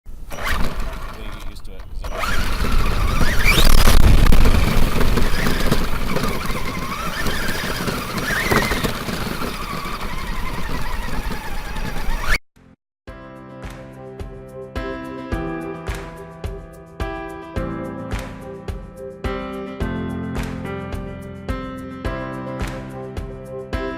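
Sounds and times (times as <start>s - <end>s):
rough rumbling noise: 0.1s - 12.4s
electric motor whining: 0.3s - 12.4s.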